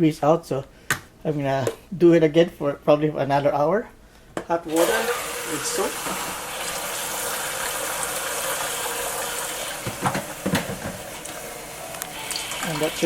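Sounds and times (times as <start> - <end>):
water running from faucet into cup: 4.7 - 10.2, 10.8 - 13.0.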